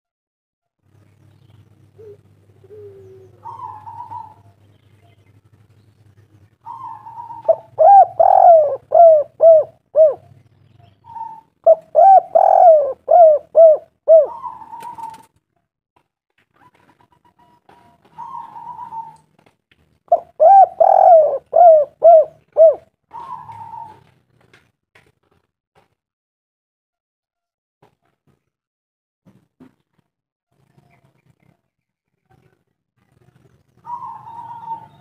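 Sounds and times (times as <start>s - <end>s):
dove cooing: 1.9s - 4.6s, 6.6s - 10.4s, 11.0s - 15.3s, 17.7s - 19.3s, 20.1s - 24.1s, 33.8s - 35.0s.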